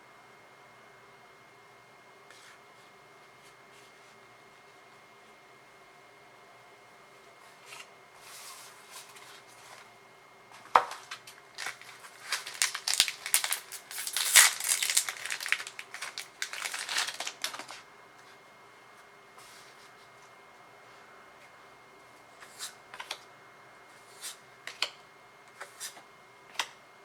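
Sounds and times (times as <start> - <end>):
foil pack crinkling and tearing: 11.0 - 17.9.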